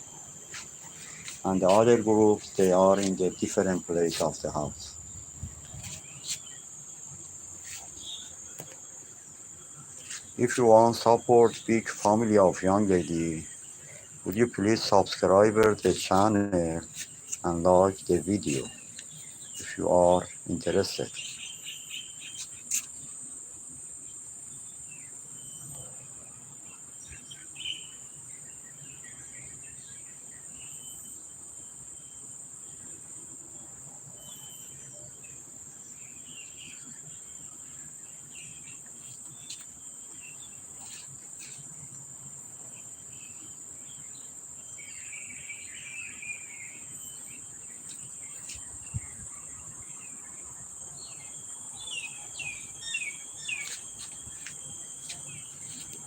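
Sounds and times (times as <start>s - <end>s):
insect chorus: 0.0s - 56.0s
bird chirps: 15.7s - 23.1s, 43.1s - 56.0s.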